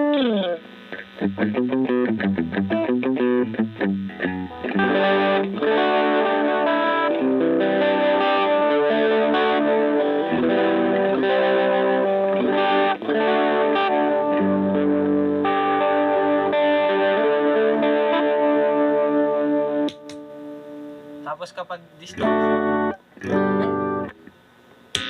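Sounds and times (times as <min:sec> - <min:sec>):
overdriven electric guitar: 0:00.0 - 0:21.3, 0:22.0 - 0:25.0
guitar pickup hum: 0:00.0 - 0:25.0.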